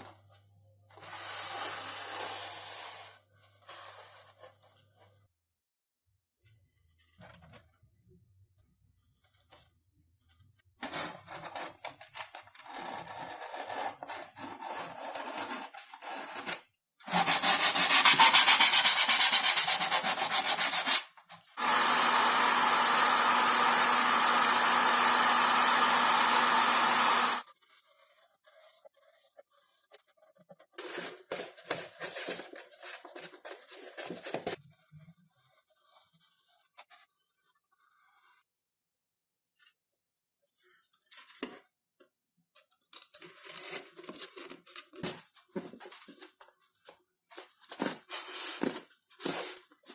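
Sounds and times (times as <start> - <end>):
foam board scratching and rubbing: 12.7 - 38.5
electric tool running: 21.6 - 27.4.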